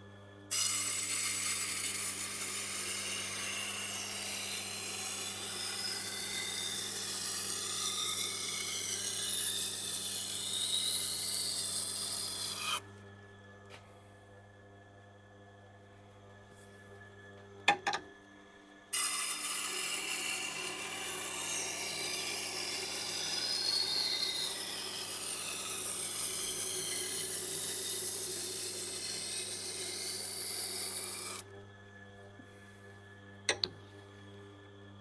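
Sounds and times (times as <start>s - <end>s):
grinder motor hum: 0.0s - 13.2s, 17.6s - 31.7s
knife grinding on wet stone: 11.2s - 12.8s, 19.8s - 31.4s.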